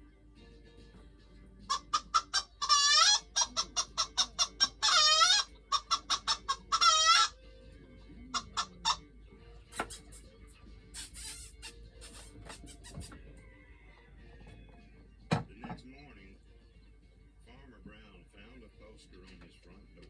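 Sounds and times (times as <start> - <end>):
hen clucking and squawking: 1.7 - 7.4, 8.3 - 9.1, 11.0 - 14.8.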